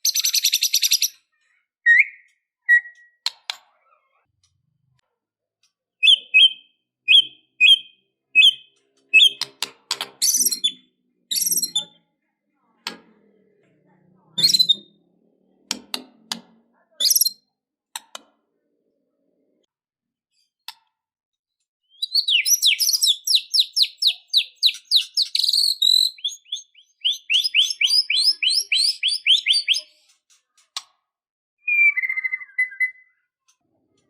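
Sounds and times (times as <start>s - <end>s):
songbird singing sharp notes: 1.8s - 3.2s, 6.0s - 9.5s, 21.9s - 29.9s.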